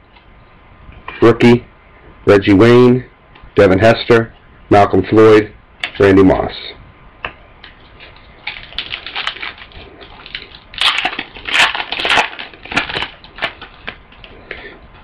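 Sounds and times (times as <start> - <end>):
foil wrapper crinkling and tearing: 8.0 - 14.4.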